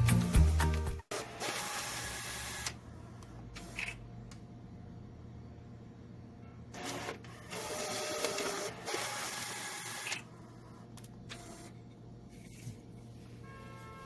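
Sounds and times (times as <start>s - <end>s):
printing and paper-feed noise: 1.1s - 2.8s, 6.8s - 10.3s
printer whir: 1.1s - 4.0s, 6.8s - 11.8s.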